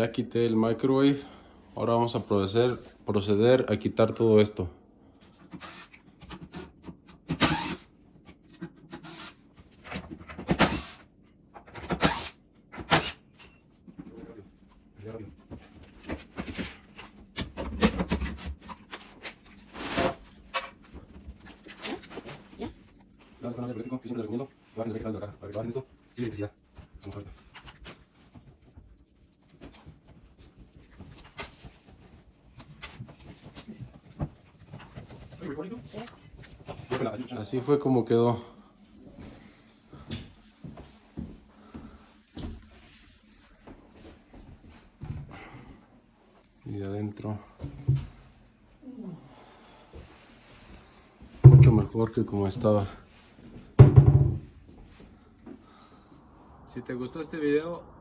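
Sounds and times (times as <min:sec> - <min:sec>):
wooden cabinet knocks and scrapes: 0:51.4 - 0:51.9, 0:53.8 - 0:54.6.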